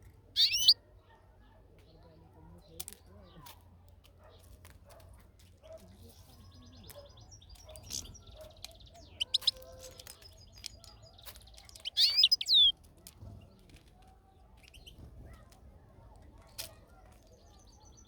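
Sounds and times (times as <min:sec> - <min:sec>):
goldfinch twittering and calling: 0:00.4 - 0:00.8, 0:06.6 - 0:12.7.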